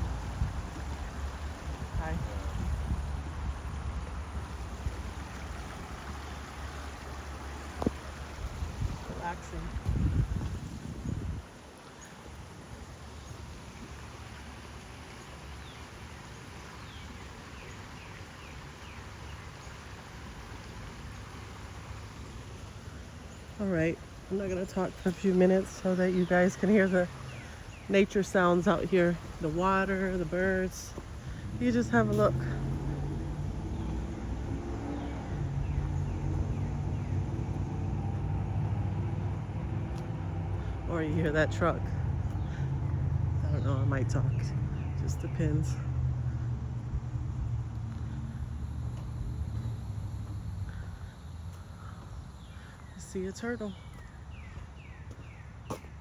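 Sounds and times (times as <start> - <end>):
creek water flowing: 0.0 - 56.0
low rumble: 31.2 - 51.1
bird chirping: 51.8 - 56.0.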